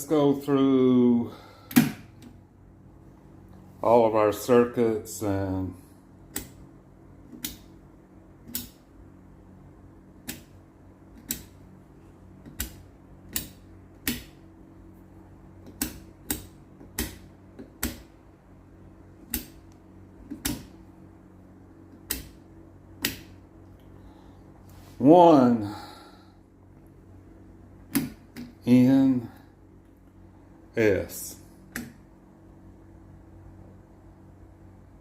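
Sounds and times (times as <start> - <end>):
low steady hum: 0.0 - 35.0
selector switches clicking: 6.3 - 6.6, 7.3 - 7.7, 8.5 - 8.8, 10.2 - 11.6, 12.4 - 14.4, 19.3 - 20.8, 21.9 - 22.4, 23.0 - 23.4.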